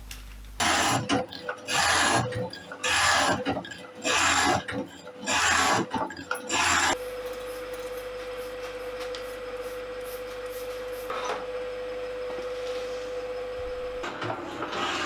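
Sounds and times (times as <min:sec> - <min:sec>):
cutting tool scraping metal: 0:00.6 - 0:07.0
shaping machine humming and whining: 0:00.6 - 0:10.3.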